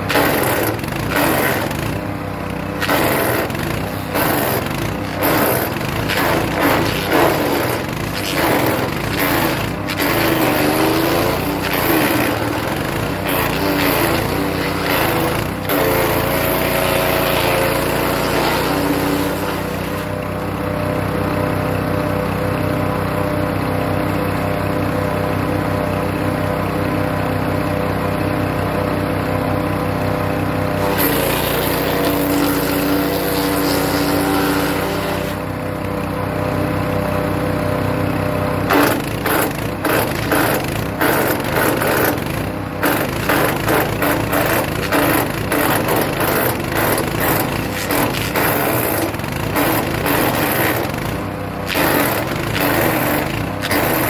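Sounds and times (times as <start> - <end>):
sharp knocks of wood cut: 0.0 - 1.9, 2.8 - 16.0, 38.7 - 51.1, 51.7 - 54.0
wood chipper engine running: 0.0 - 54.0
branches crunching in chipper: 2.8 - 20.1, 42.9 - 50.7.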